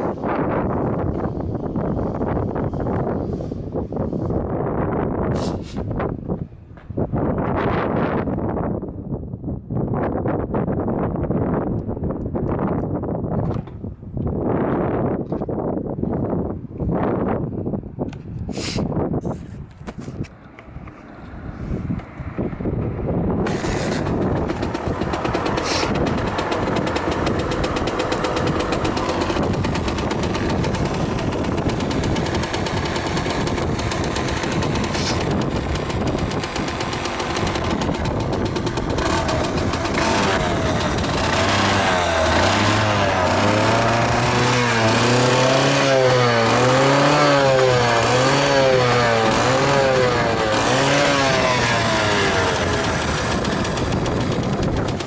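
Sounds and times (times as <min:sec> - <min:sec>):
motorcycle engine running: 0:23.4 - 0:55.0.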